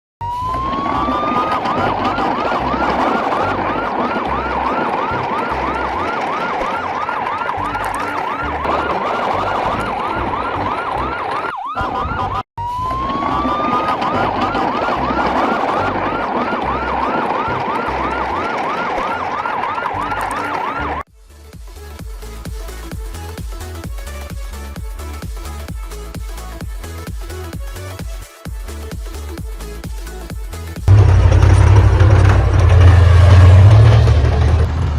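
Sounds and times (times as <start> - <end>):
electronic toy siren yelping: 0.2 - 21.0
low rumble: 30.9 - 34.9.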